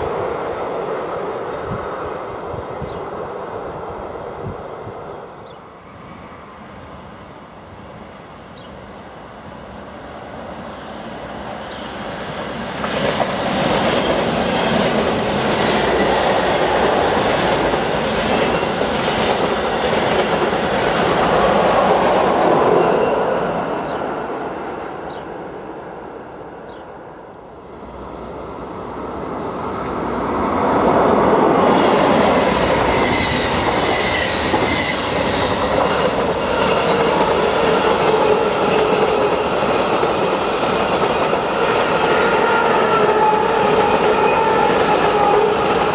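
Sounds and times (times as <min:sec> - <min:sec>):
train wheels clattering over rails: 0:12.2 - 0:21.9, 0:30.3 - 0:45.9.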